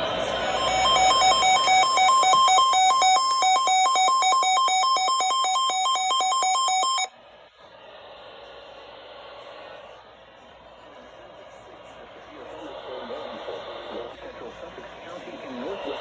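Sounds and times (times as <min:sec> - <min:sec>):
two-tone electronic alarm warble: 0:00.4 - 0:07.1
faint radio hiss: 0:07.1 - 0:16.0.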